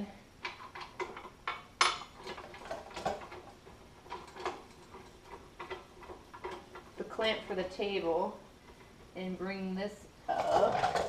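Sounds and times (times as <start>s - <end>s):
metallic clicks and knocks: 0.4s - 7.2s.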